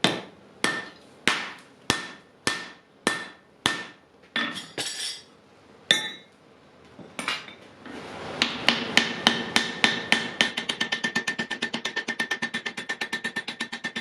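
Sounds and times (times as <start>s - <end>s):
hammer striking an anvil: 0.0s - 5.0s.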